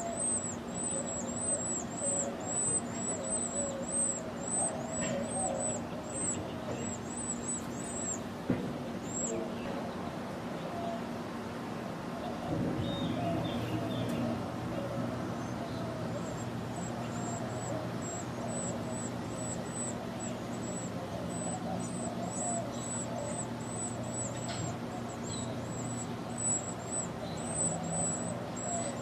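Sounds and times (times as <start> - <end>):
small bird chirping: 0.0 - 8.3, 9.0 - 9.4, 15.4 - 29.0
steady low hum: 0.0 - 29.0.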